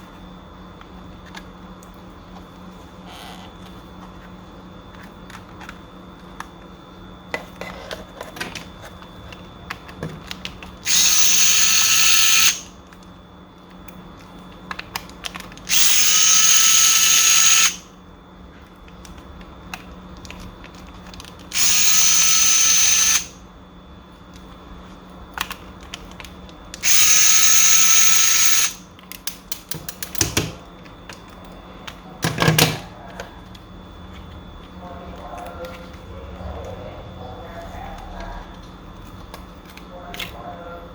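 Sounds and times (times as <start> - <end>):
electric screwdriver whine: 10.8 - 12.7, 15.7 - 17.9, 21.5 - 23.4, 26.8 - 28.8.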